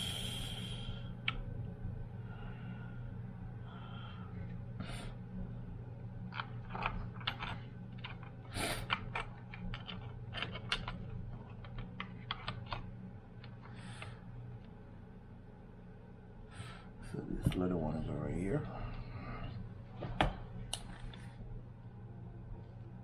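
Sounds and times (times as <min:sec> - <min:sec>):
steady low hum: 0:00.0 - 0:23.0
small parts clicking and scraping: 0:06.3 - 0:14.2.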